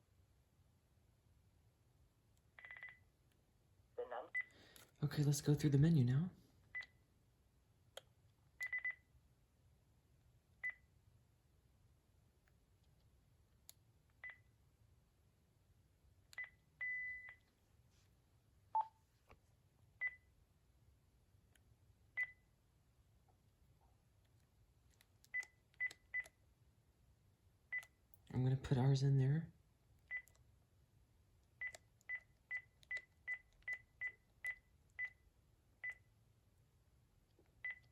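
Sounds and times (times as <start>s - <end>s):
phone keypad beeps: 8.6s - 9.0s.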